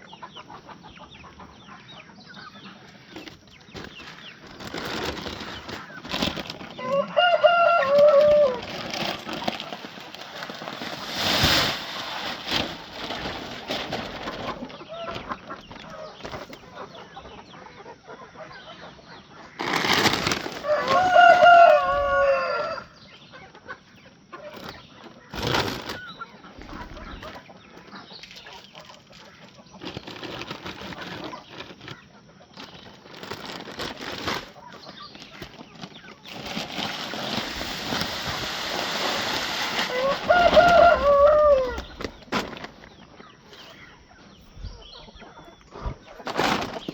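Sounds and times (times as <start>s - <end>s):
chickens clucking: 0.0s - 46.9s
rooster crowing: 6.8s - 8.8s, 20.6s - 23.0s, 39.9s - 42.2s.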